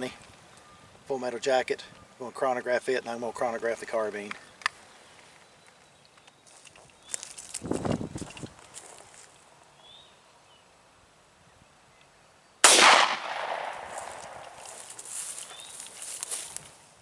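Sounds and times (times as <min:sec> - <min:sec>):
pistol shot with echo: 0:12.6 - 0:14.7.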